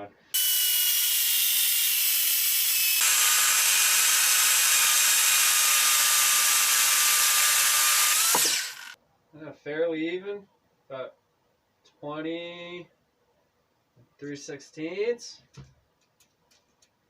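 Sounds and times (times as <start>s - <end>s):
chainsaw cutting wood: 0.4s - 9.0s.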